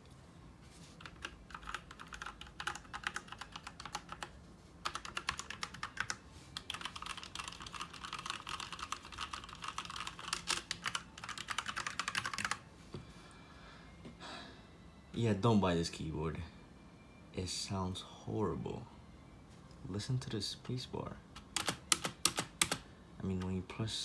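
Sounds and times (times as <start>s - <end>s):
mechanical keyboard typing: 1.0s - 12.6s, 21.4s - 22.8s.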